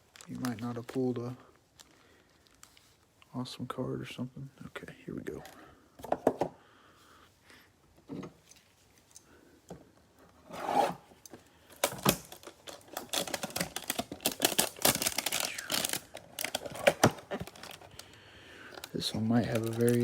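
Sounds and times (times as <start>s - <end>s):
packaging crinkling and tearing: 0.0s - 1.0s, 11.8s - 20.0s.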